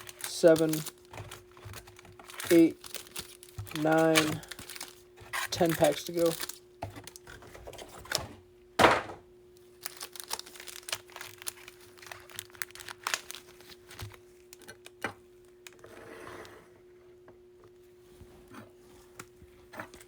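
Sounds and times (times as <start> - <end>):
foil wrappers crinkling: 0.0 - 8.2, 9.6 - 15.8
thunk on table: 8.8 - 9.2.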